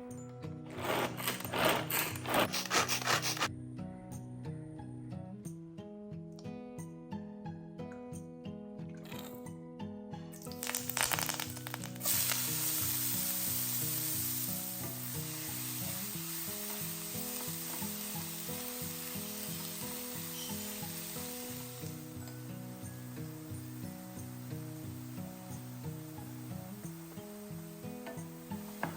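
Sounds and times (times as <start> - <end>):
background music: 0.0 - 28.9
oil crackle: 10.4 - 22.0
hot oil sizzling in a pan: 10.4 - 28.9.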